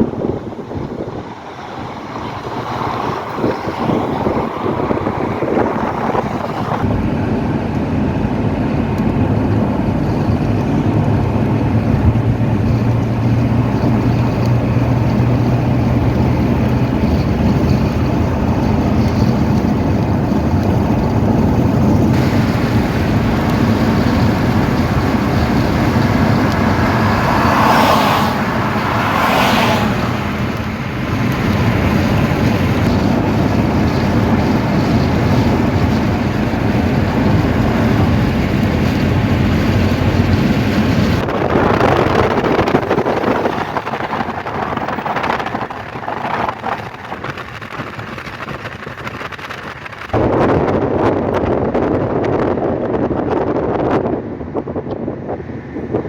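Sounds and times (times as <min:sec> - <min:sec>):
passing whooshes: 0:00.0 - 0:09.0, 0:20.5 - 0:46.9
car road noise: 0:00.0 - 0:56.0.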